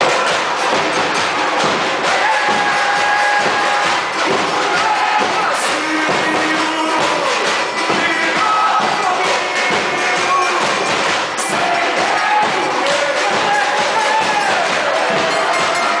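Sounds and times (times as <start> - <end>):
busy background music: 0.0 - 16.0.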